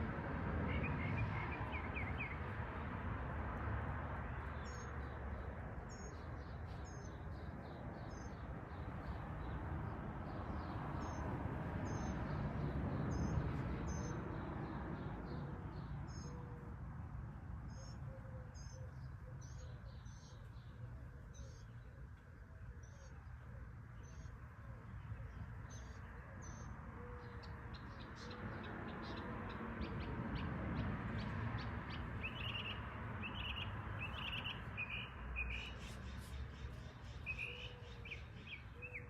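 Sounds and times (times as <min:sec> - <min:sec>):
bird chirping: 0:24.0 - 0:39.0.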